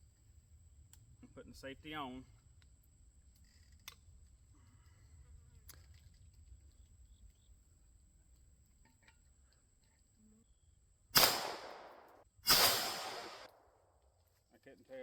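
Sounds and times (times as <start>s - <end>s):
pistol shot: 11.2s - 13.5s.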